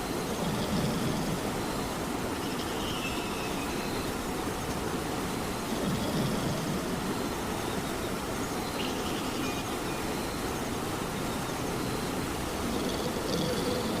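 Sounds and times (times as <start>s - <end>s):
steady rain: 0.0s - 14.0s.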